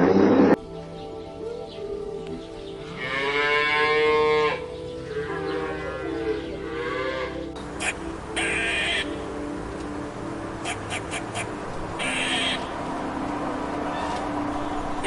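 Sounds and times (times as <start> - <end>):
cow mooing: 2.9 - 7.5.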